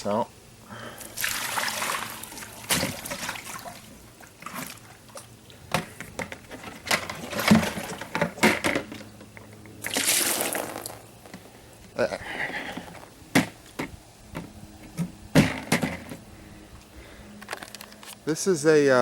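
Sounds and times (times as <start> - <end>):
water splashing and sloshing: 1.0 - 9.1, 9.8 - 11.4.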